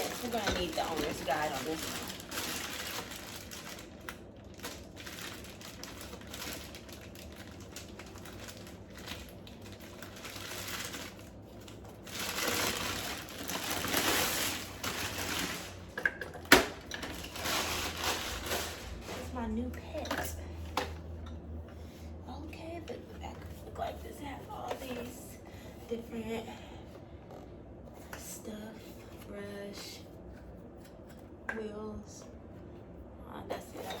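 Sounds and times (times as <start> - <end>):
packaging rustling and crinkling: 0.0 - 16.0, 16.6 - 19.4.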